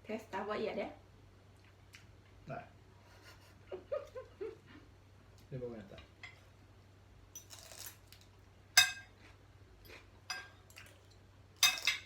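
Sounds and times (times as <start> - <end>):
cutlery clinking against plates: 8.8 - 9.2, 9.8 - 12.0.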